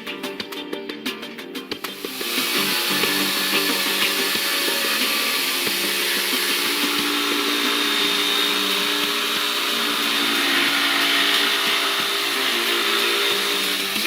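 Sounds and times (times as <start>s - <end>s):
electric jigsaw whining: 1.8s - 14.0s.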